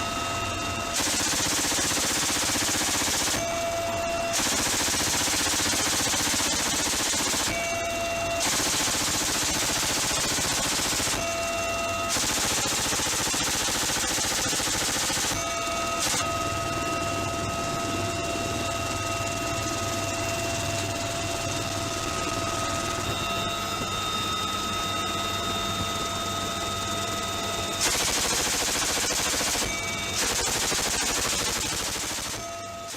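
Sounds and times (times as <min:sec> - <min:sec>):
high mechanical whine: 0:00.0 - 0:32.9
minigun firing in bursts: 0:00.9 - 0:16.2, 0:27.8 - 0:32.9.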